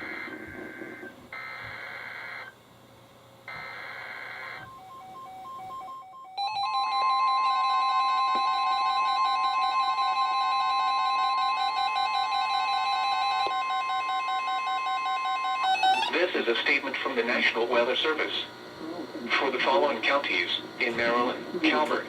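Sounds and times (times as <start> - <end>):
screeching digital data bursts: 0.0 - 2.6, 3.5 - 5.4
steady warning alarm tone: 0.0 - 2.7, 3.5 - 18.6, 19.3 - 22.0
alert alarms beeping: 3.5 - 16.2.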